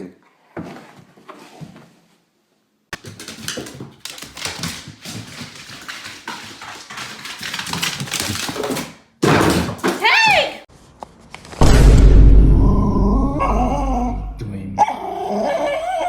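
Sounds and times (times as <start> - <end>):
dog making vocal noises: 14.8 - 16.0.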